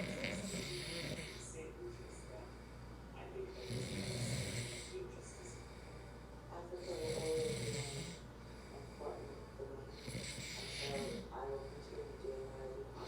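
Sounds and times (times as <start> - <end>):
man snoring: 0.0 - 1.4, 3.6 - 5.0, 7.0 - 8.2, 10.0 - 11.2.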